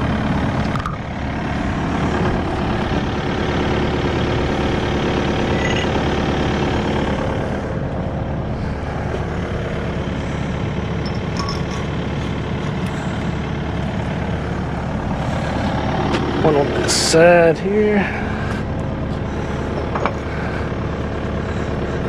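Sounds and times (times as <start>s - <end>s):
excavator diesel engine idling: 0.0s - 22.0s.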